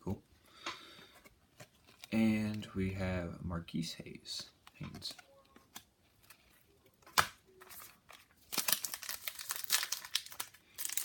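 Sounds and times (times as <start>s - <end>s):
foil wrapper crinkling: 6.1s - 11.0s.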